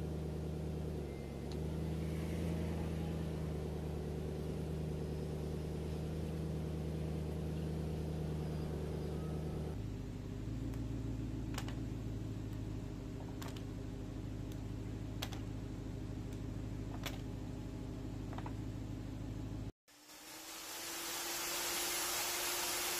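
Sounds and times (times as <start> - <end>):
electric motor humming: 20.1 - 22.9.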